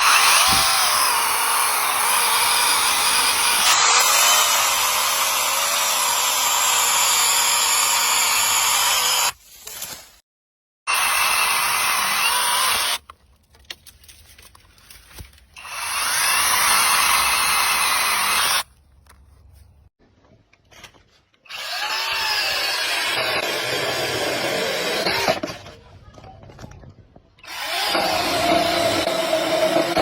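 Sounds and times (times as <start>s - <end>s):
chainsaw cutting wood: 0.0s - 9.4s, 10.9s - 13.0s, 15.6s - 18.7s, 21.5s - 25.6s, 27.4s - 30.0s.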